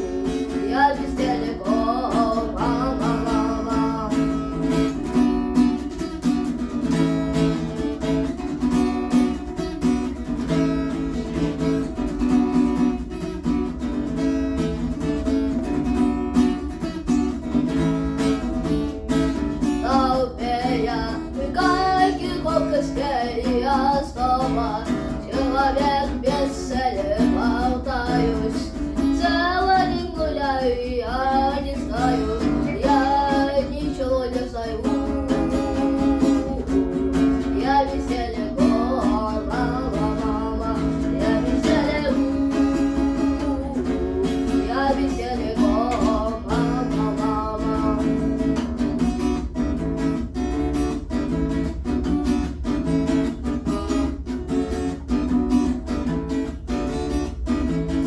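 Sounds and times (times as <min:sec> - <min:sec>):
child singing: 0:00.0 - 0:05.3, 0:19.5 - 0:49.0
acoustic guitar strumming: 0:00.0 - 0:58.0.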